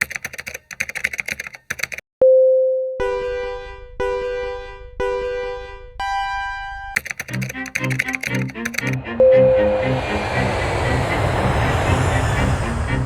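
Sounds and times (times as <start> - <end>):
rapid typing-like clicking: 0.0 - 2.0, 7.0 - 9.0
countdown beeps: 2.2 - 7.0, 9.2 - 10.0
clear electronic tone: 9.1 - 10.5.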